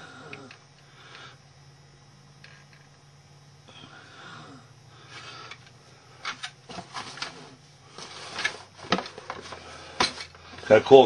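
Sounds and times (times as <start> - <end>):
faint breathing: 0.0 - 1.6, 3.6 - 6.3, 9.5 - 10.7
low steady hum: 0.0 - 11.0.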